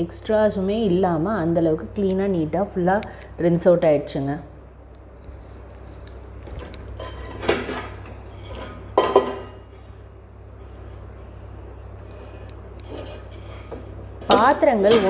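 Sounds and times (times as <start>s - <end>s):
dishes clinking: 7.0s - 9.7s.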